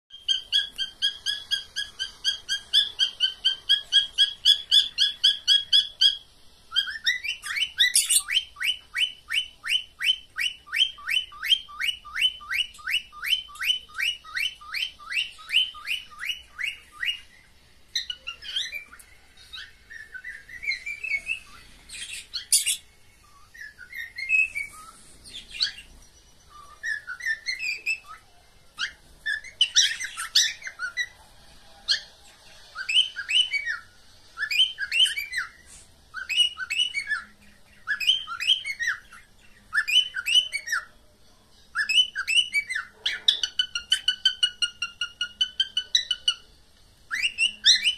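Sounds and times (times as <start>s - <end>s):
cockatiels chirping: 0.1s - 41.0s, 41.7s - 46.5s, 47.1s - 47.9s
short rising whistles: 23.4s - 25.9s.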